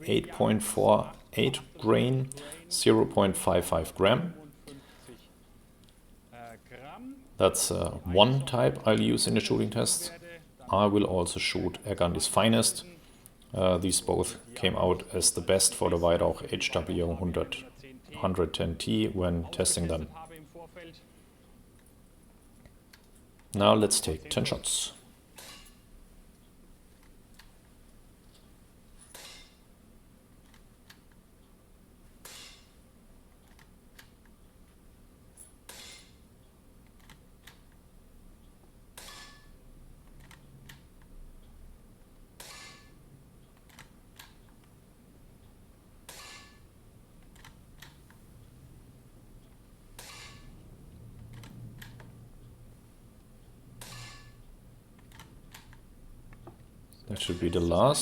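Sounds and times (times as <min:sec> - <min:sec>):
quiet air rifle shots: 0:29.1 - 0:29.6, 0:32.2 - 0:32.8, 0:35.7 - 0:36.2, 0:39.0 - 0:39.6, 0:42.4 - 0:43.0, 0:46.1 - 0:46.7, 0:50.0 - 0:50.6, 0:53.8 - 0:54.4.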